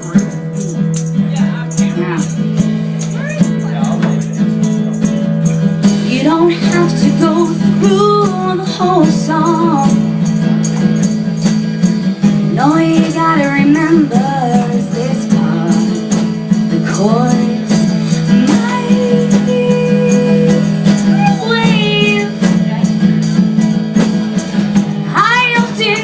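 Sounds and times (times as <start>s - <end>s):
held chords: 0.0s - 26.0s
jingling percussion beat: 0.0s - 26.0s
person singing: 12.5s - 22.5s.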